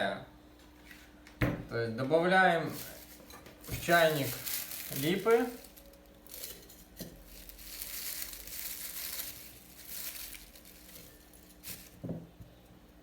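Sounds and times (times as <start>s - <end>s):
dry blossoms crinkling and rustling: 2.5s - 12.6s.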